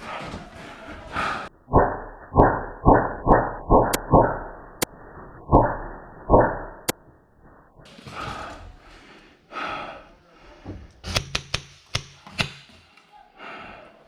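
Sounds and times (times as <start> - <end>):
paintball marker shots: 11.0 - 12.7.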